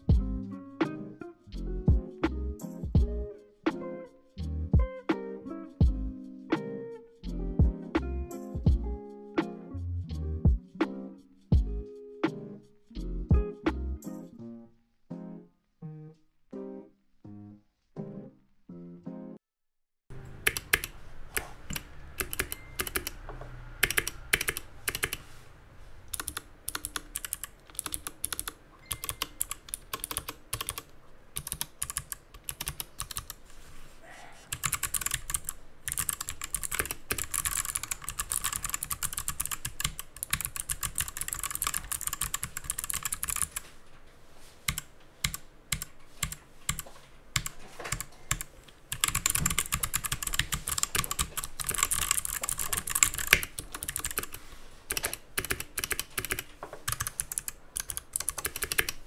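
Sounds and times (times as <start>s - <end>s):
clicky mechanical keyboard typing: 20.2s - 23.2s, 23.8s - 25.2s, 26.1s - 33.4s, 34.5s - 43.7s, 44.7s - 46.8s, 47.4s - 59.0s.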